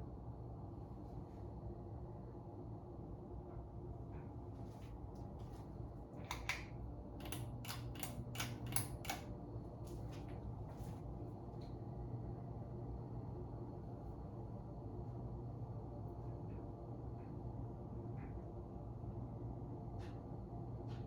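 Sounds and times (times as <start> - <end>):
ceiling fan motor humming: 0.0 - 21.0
sharp mechanical clicks: 7.2 - 9.3.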